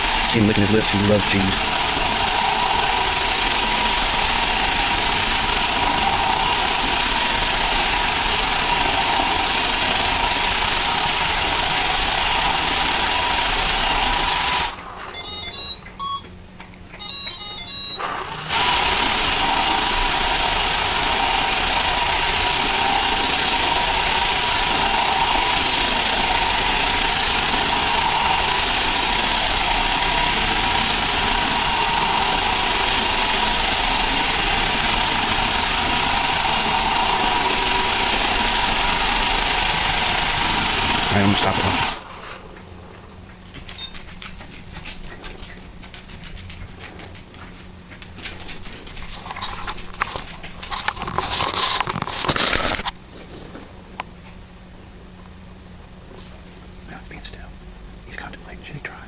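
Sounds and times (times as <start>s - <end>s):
robot vacuum droning: 0.0s - 15.7s, 17.1s - 42.4s
short high beeps: 15.1s - 16.3s, 17.0s - 18.0s.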